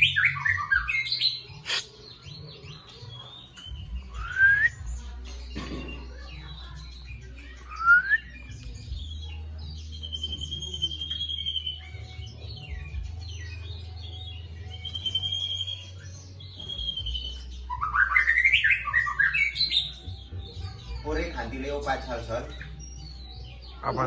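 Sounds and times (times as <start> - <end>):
bird singing whistles and trills: 0.0 - 24.0.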